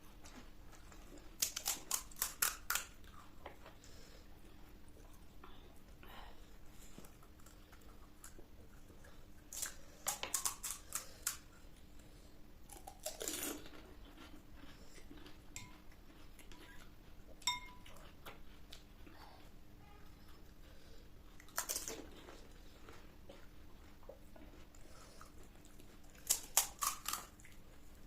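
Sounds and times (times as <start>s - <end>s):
dishes and utensils clinking: 15.6s - 15.8s, 17.4s - 17.9s
metal spoon striking dish: 17.4s - 17.8s.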